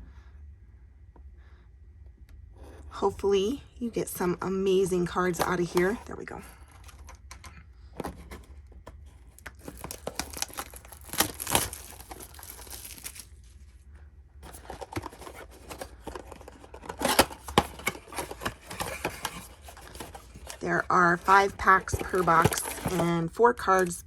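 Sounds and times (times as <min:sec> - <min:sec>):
cardboard packaging tearing and crinkling: 0:08.0 - 0:13.6, 0:14.4 - 0:24.0.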